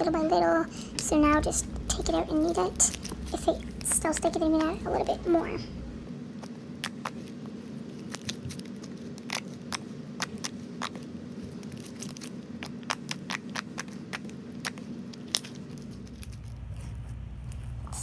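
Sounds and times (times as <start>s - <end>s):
steady low hum: 0.0s - 8.1s, 14.0s - 18.0s.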